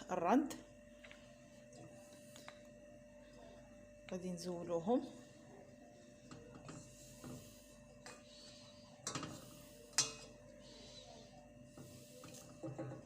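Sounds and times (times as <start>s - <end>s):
utensil clinking against pot: 9.0s - 10.3s.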